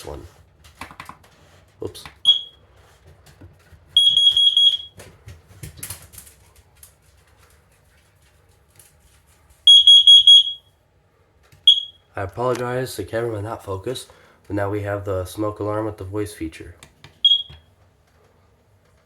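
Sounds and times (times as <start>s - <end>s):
smoke alarm beeps: 2.2s - 2.6s, 4.0s - 5.0s, 9.7s - 10.8s, 11.6s - 12.1s, 17.2s - 17.7s.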